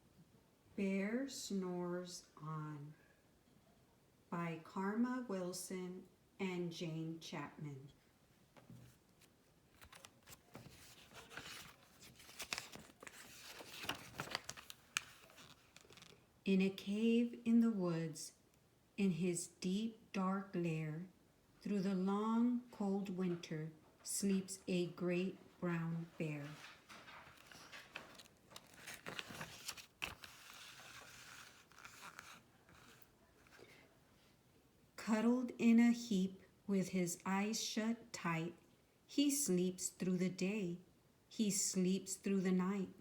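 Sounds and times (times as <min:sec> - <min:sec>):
paper rustling and crinkling: 0:08.7 - 0:16.2, 0:26.4 - 0:33.8.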